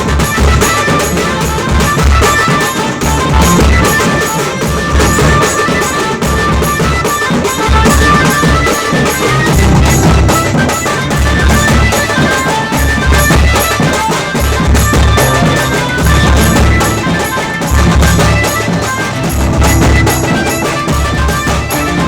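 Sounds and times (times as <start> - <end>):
tasa drum strokes: 0.1 - 22.0
melody line: 9.2 - 12.1, 15.2 - 22.0
heavy bass drum beats: 9.3 - 13.6, 14.4 - 22.0.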